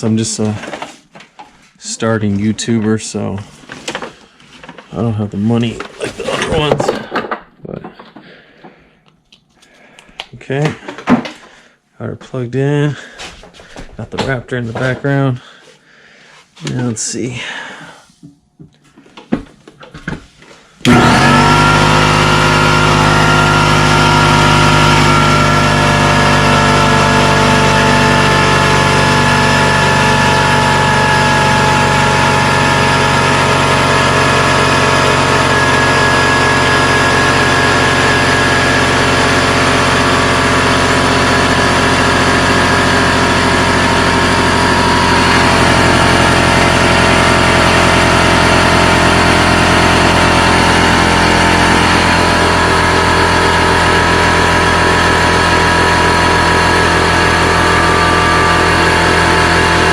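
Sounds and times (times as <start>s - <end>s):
air compressor running: 20.8s - 59.9s.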